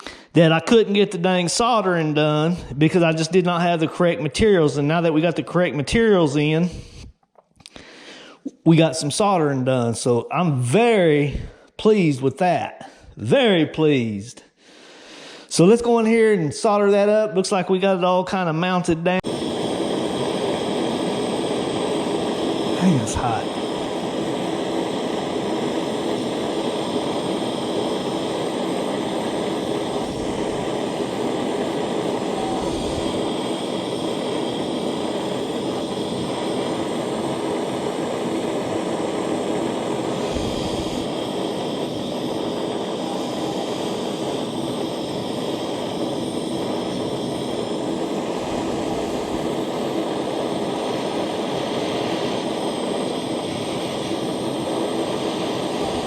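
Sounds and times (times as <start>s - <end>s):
soldering torch flame hissing: 0.0s - 7.1s, 19.2s - 56.0s.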